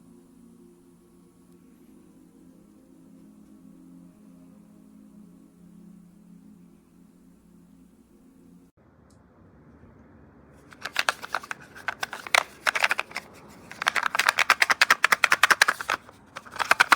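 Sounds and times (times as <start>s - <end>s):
rapid sharp clicking: 10.7s - 16.9s.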